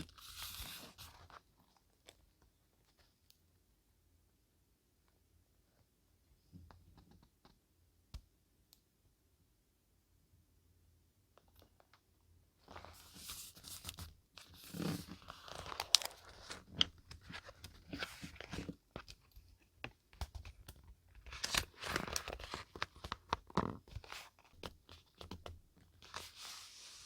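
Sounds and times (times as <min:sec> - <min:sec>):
paper rustling and crinkling: 0:00.0 - 0:01.8, 0:12.7 - 0:19.3, 0:20.4 - 0:27.0.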